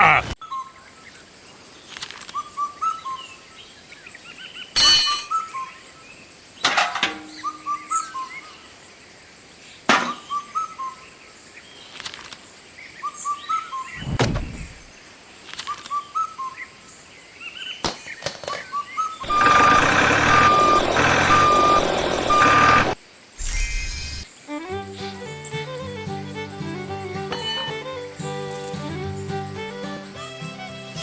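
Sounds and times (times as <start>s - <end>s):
bird chirping: 7.3s - 8.7s, 15.6s - 19.8s.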